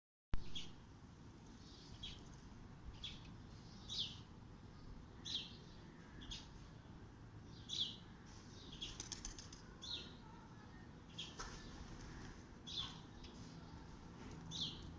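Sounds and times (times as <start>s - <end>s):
small bird chirping: 1.4s - 6.7s, 7.5s - 11.8s, 12.6s - 14.9s.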